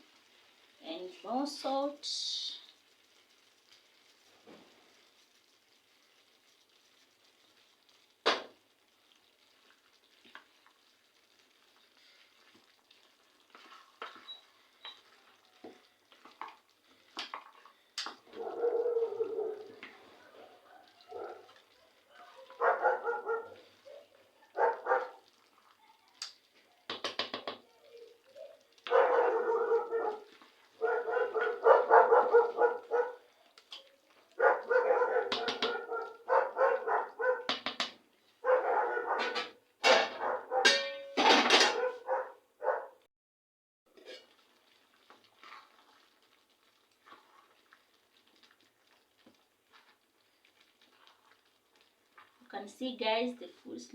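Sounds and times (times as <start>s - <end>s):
spoon knocking and scraping pot: 13.5s - 16.6s, 26.9s - 27.6s, 35.3s - 35.9s, 37.4s - 38.0s, 39.2s - 41.8s, 43.9s - 44.4s
dog barking and whining: 18.3s - 25.2s, 28.5s - 33.3s, 34.3s - 37.5s, 38.4s - 40.8s, 41.6s - 43.0s.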